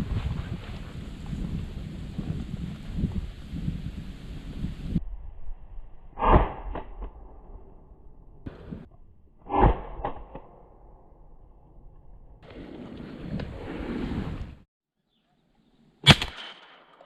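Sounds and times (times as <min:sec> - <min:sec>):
shotgun shots with echoes: 0:16.1 - 0:16.9.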